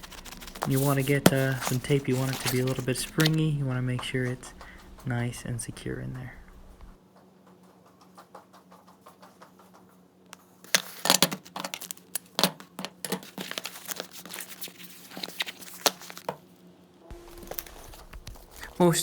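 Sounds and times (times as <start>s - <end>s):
packing tape ripping: 0.0s - 3.4s, 10.7s - 16.2s, 17.3s - 18.8s.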